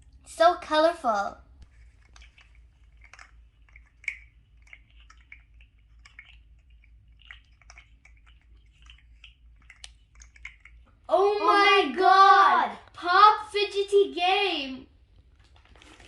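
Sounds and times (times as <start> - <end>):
fidget toys clicking and crinkling: 1.6 - 11.0.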